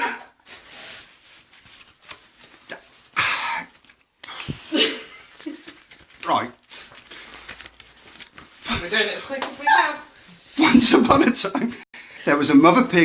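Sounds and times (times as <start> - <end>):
breathy cough-like burst: 3.2 - 3.7.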